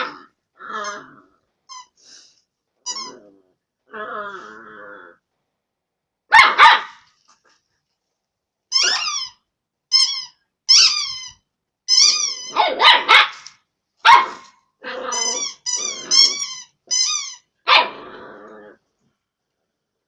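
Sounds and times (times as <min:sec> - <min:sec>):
puppy barking and growling: 0:00.0 - 0:01.4, 0:06.3 - 0:07.0, 0:12.0 - 0:16.8, 0:17.6 - 0:18.9
rubber duck squeaking: 0:02.9 - 0:03.2, 0:08.7 - 0:12.7, 0:15.1 - 0:17.5.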